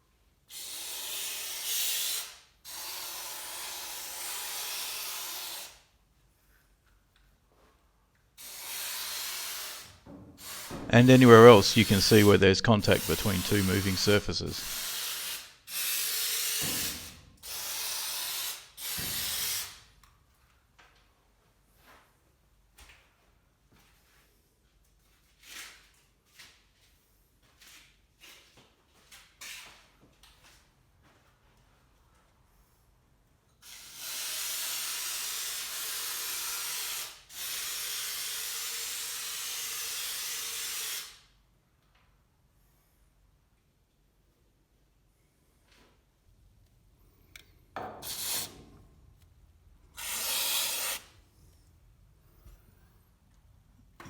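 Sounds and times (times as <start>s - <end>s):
aerosol can spraying: 50.0s - 51.0s.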